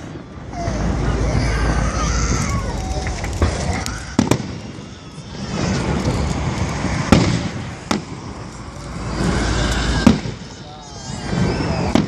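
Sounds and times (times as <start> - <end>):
firework shells bursting: 2.6 - 12.0.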